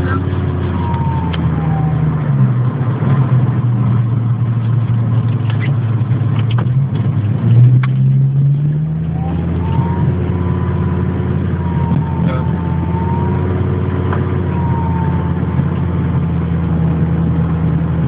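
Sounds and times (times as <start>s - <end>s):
high-pitched engine whine: 0.0s - 4.4s, 6.6s - 18.0s
car engine running: 0.0s - 18.0s.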